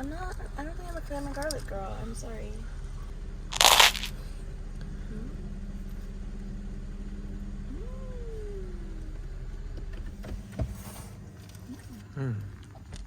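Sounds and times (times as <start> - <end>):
car engine idling: 0.0 - 13.0
loud burst of noise: 3.5 - 4.3.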